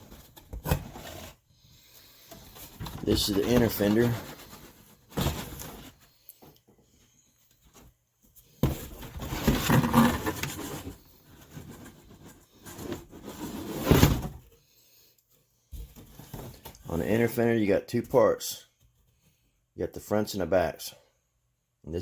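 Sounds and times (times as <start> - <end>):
packaging rustling: 2.3 - 6.4.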